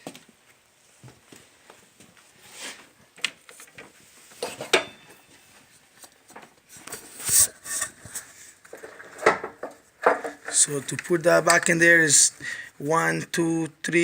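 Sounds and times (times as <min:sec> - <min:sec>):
loud metal scrape: 0:07.2 - 0:08.4.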